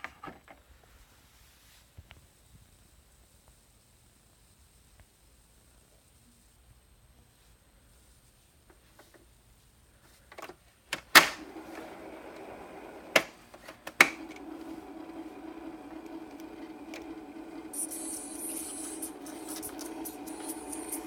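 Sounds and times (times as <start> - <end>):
record player clicks and knocks: 10.4 - 12.4, 13.0 - 14.6
motor humming: 11.4 - 21.0
high hiss: 16.7 - 21.0.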